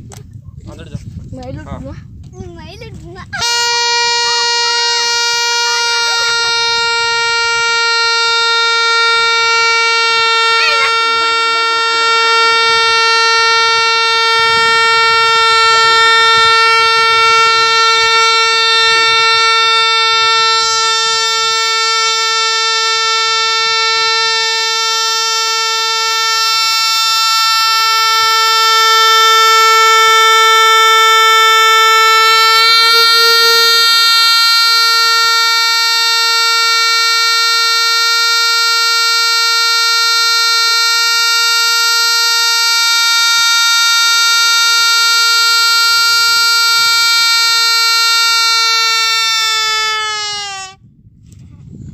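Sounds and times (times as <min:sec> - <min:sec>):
balloon letting air out: 0:49.5 - 0:50.8.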